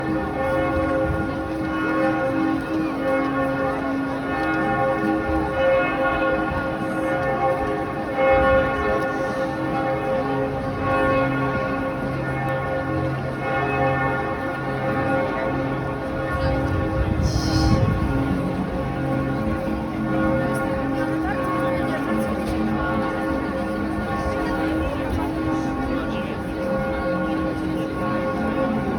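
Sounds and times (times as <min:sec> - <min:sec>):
church bells pealing: 0:00.0 - 0:28.9.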